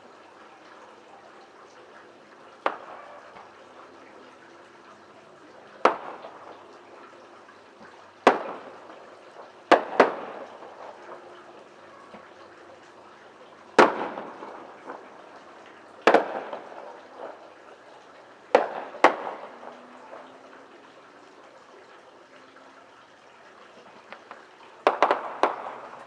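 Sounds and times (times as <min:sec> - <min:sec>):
fireworks bangs echoing: 0:02.6 - 0:03.1, 0:05.8 - 0:06.6, 0:08.2 - 0:08.9, 0:09.7 - 0:11.2, 0:13.8 - 0:15.1, 0:16.0 - 0:17.5, 0:18.5 - 0:19.7, 0:24.8 - 0:26.0.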